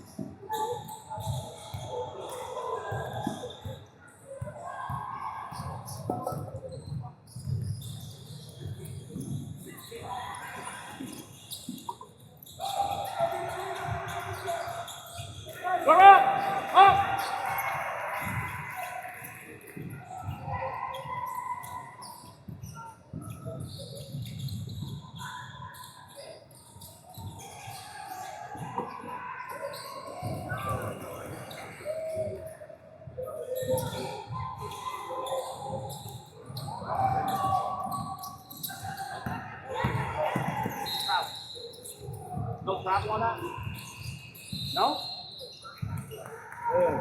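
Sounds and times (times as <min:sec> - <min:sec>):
basketball court sounds: 0:26.8 - 0:32.5, 0:33.5 - 0:47.0
basketball bouncing: 0:39.2 - 0:40.8.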